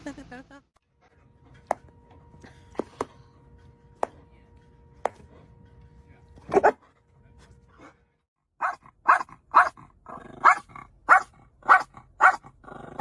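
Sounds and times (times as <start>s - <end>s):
dog barking: 6.5s - 6.8s, 8.6s - 13.0s.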